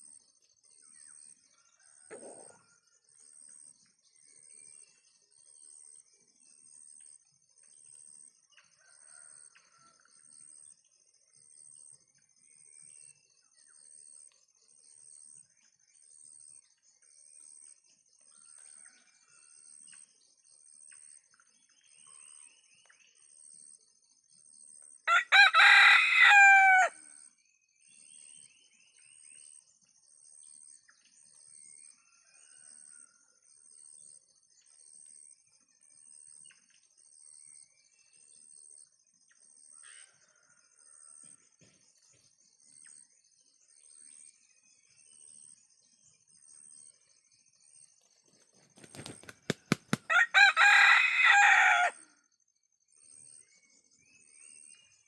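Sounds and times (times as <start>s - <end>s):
faint high-pitched chirp: 0.0s - 24.9s
rooster crowing: 25.1s - 27.1s, 50.0s - 52.1s.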